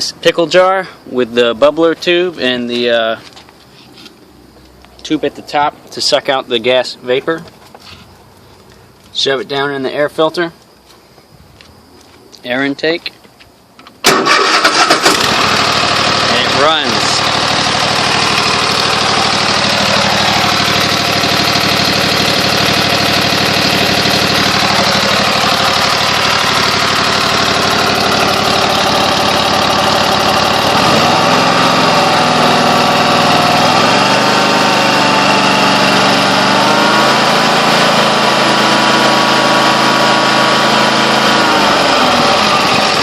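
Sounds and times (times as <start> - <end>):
small lawn mower engine running: 14.0 - 43.0.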